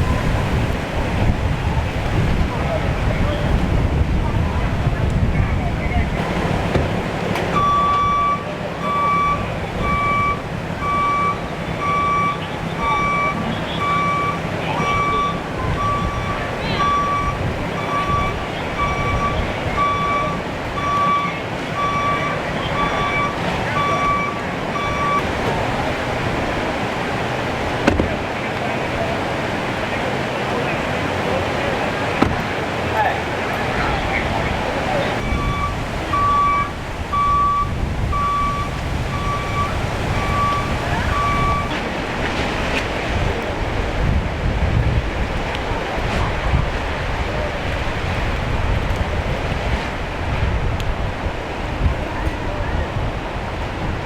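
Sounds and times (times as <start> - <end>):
steady rushing noise: 0.0 - 54.0
vehicle reversing alarm beeping: 5.9 - 28.4, 33.8 - 41.9.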